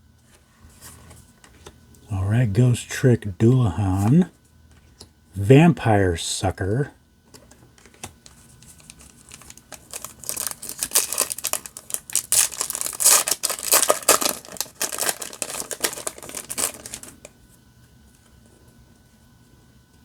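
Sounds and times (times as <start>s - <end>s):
foil wrapper crinkling and tearing: 8.6s - 17.3s.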